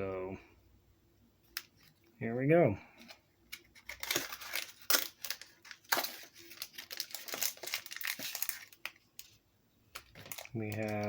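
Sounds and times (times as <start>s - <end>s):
tape and packaging tearing: 3.6s - 9.3s, 10.0s - 11.0s.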